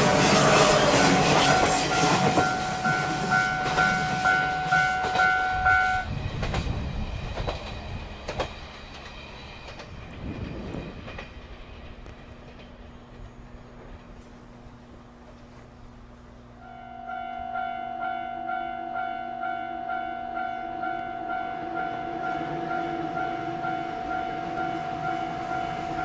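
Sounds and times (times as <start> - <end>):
pulsing crossing alarm: 0.0 - 6.1, 16.6 - 26.0
train wheels clacking over rail joints: 0.0 - 14.6.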